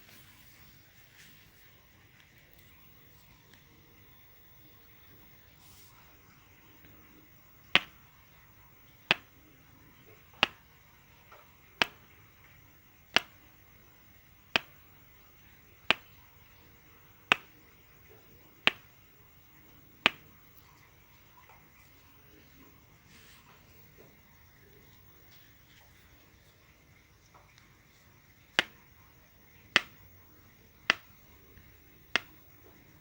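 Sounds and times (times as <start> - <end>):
sharp clicks: 7.8 - 8.0, 10.4 - 10.6, 13.1 - 13.4, 14.5 - 14.8, 15.9 - 16.1, 17.3 - 17.6, 18.6 - 19.0, 20.0 - 20.4, 28.6 - 28.8, 29.7 - 30.1, 30.8 - 32.5.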